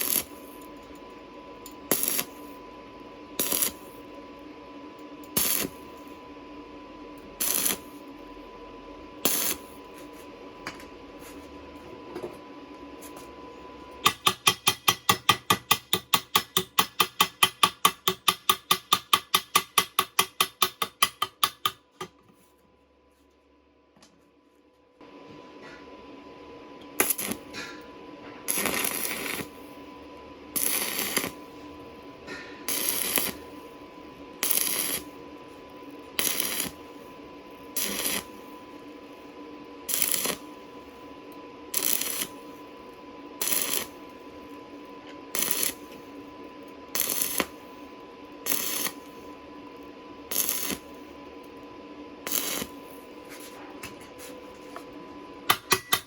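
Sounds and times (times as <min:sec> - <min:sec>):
welding arc crackling: 0:00.0 - 0:00.8, 0:01.8 - 0:02.7, 0:03.4 - 0:04.1, 0:05.3 - 0:06.0, 0:07.4 - 0:08.1, 0:09.2 - 0:09.9, 0:14.0 - 0:21.9, 0:27.0 - 0:27.8, 0:28.5 - 0:41.1, 0:41.7 - 0:46.3, 0:46.9 - 0:51.3, 0:52.2 - 0:53.6
electrical hum: 0:00.0 - 0:56.0.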